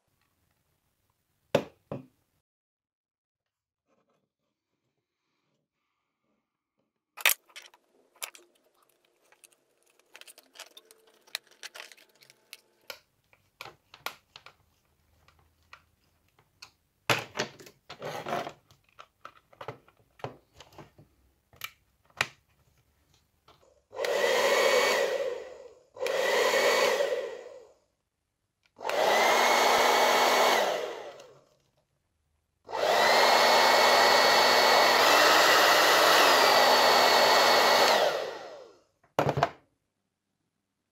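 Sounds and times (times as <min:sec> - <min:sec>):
hair dryer blowing: 0:23.9 - 0:27.8, 0:28.8 - 0:31.4, 0:32.7 - 0:38.8.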